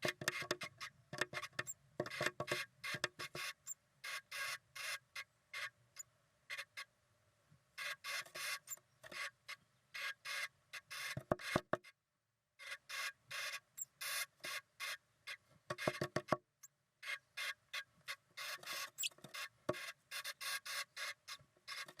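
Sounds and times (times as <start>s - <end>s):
bird rasping: 18.4s - 22.0s.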